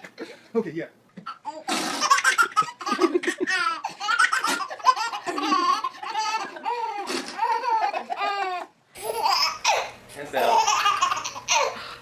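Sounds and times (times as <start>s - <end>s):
young child laughing: 1.2s - 11.8s.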